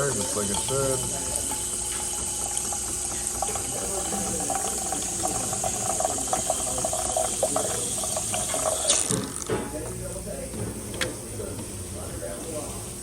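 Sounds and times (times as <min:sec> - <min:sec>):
rattling gurgle of frother: 0:00.0 - 0:09.5
coffee machine steam hissing: 0:00.0 - 0:13.0.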